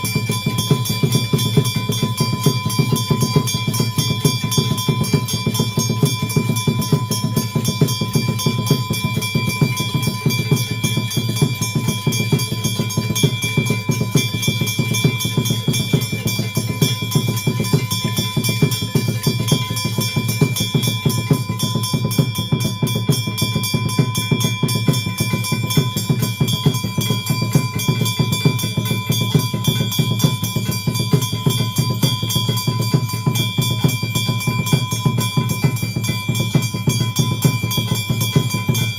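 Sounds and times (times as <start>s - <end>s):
bells ringing: 0.0s - 38.9s
drums beaten in fast rhythm: 0.0s - 38.9s.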